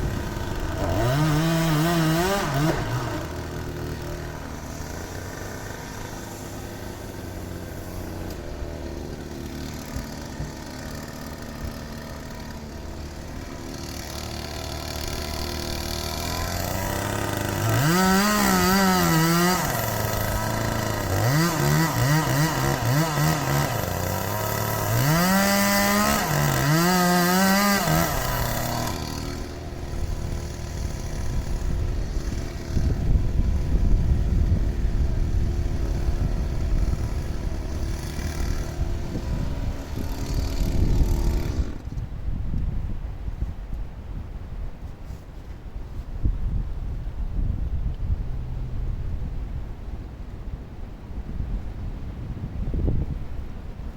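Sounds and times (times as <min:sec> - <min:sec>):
chainsaw engine revving: 0:00.0 - 0:42.0.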